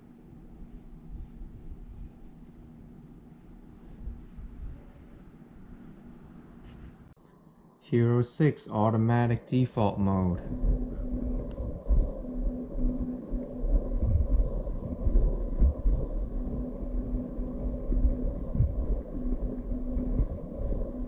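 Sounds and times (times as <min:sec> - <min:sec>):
wind rumble: 0:00.0 - 0:07.1, 0:10.4 - 0:21.0
gimbal motor hum: 0:00.0 - 0:07.6, 0:10.1 - 0:21.0
microphone handling noise: 0:10.4 - 0:20.9.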